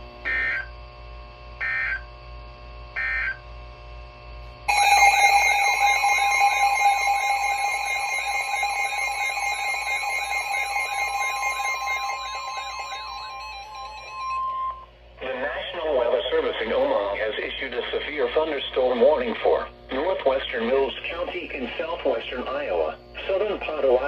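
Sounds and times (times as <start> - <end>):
screeching digital data bursts: 4.7 - 14.8
two-tone alert attention signal: 4.7 - 14.8.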